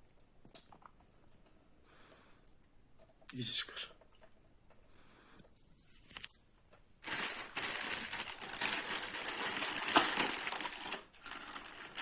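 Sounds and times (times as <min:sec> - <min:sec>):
plastic packaging crinkling: 0:07.0 - 0:12.0.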